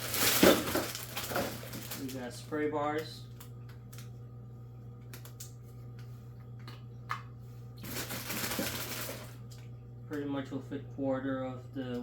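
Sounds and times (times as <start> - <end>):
plastic rustle: 0.0 - 2.4, 7.8 - 9.3
steady low hum: 0.0 - 12.0.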